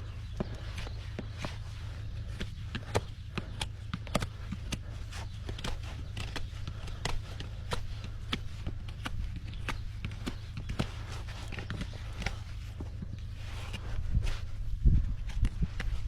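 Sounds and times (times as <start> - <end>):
steady low hum: 0.0 - 16.0
hoof-trimming tools clicking and snapping: 2.3 - 13.8.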